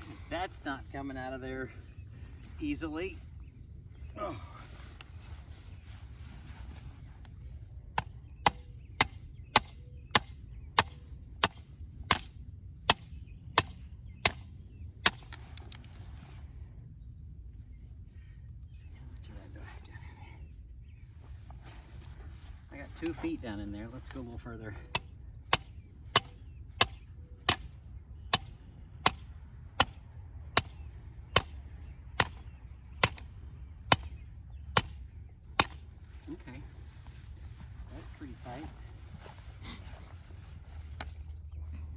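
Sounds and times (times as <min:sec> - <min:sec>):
hammer striking a stake: 0:08.0 - 0:15.7, 0:24.9 - 0:31.6, 0:32.2 - 0:33.3, 0:33.9 - 0:35.0, 0:35.6 - 0:35.9.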